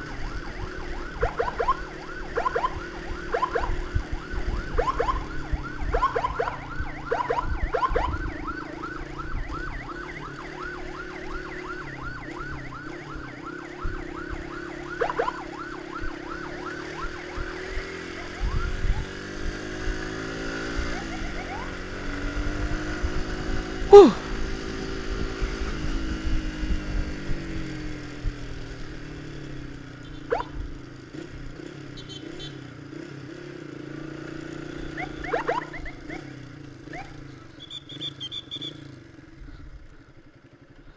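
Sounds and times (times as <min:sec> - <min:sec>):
emergency siren yelping: 0:00.0 - 0:24.3, 0:30.2 - 0:30.7, 0:34.8 - 0:38.6
motorcycle engine running: 0:00.0 - 0:40.9.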